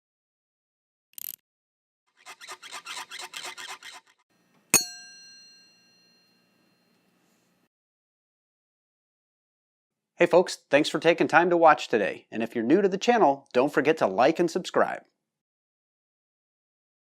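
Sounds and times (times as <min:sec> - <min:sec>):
rasping rubbing strokes: 0:02.1 - 0:04.2
metallic strike ringing: 0:04.8 - 0:06.3.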